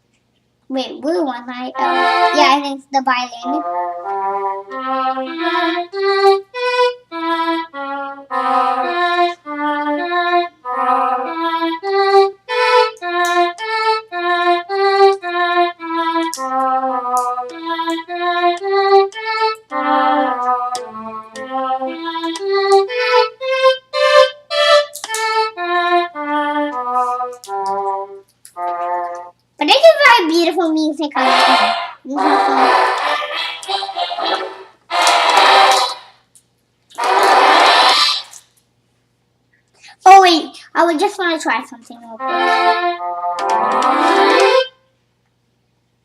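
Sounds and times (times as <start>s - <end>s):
electronic keyboard violin tune: 1.7s - 2.6s, 3.4s - 29.4s, 31.2s - 36.0s, 42.2s - 44.8s.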